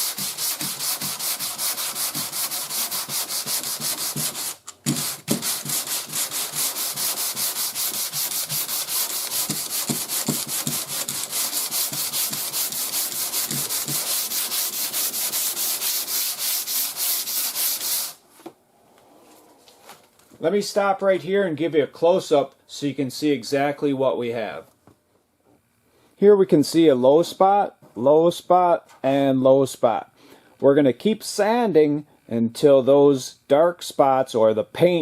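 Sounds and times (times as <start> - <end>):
sandpaper rubbing back and forth: 0.0 - 18.2.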